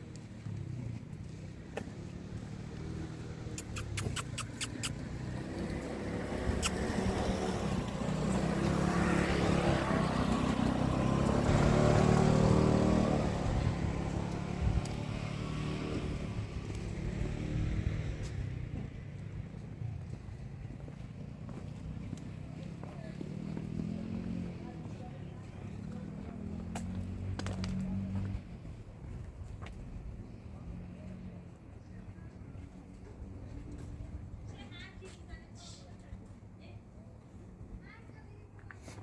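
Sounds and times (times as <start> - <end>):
vehicle passing by: 0.0 - 19.4, 21.7 - 31.8.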